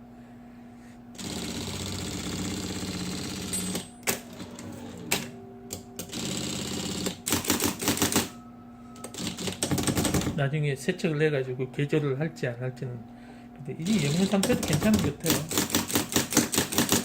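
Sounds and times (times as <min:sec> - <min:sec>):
typewriter motor hum: 0:01.1 - 0:08.4, 0:09.0 - 0:10.4, 0:13.8 - 0:17.0.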